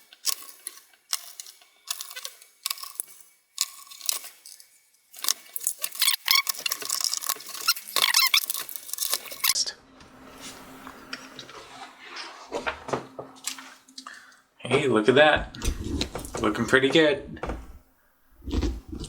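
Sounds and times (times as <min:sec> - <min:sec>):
clattering of small hard parts: 0:00.0 - 0:09.6.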